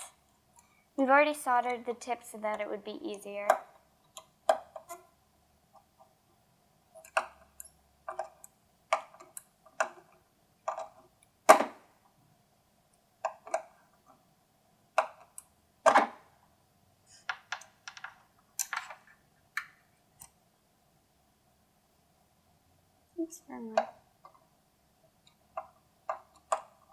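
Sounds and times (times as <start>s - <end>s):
faint steady hum: 0.0s - 26.9s.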